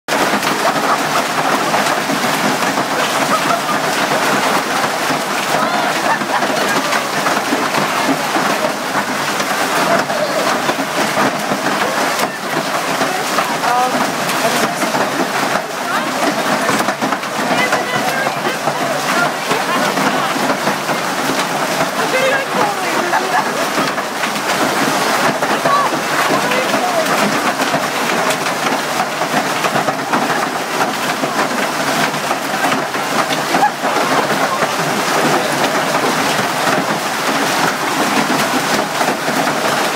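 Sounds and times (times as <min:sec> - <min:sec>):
hailstones pelting down: 0:00.1 - 0:39.9.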